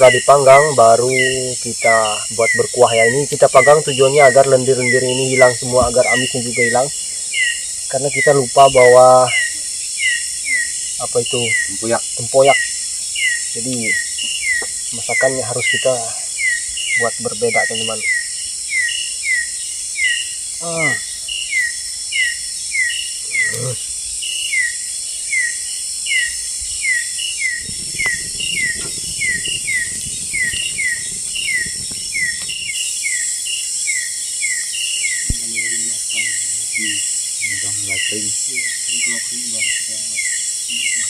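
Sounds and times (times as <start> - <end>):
high-pitched insect drone: 0.0 - 41.0
low rushing noise: 27.6 - 32.9.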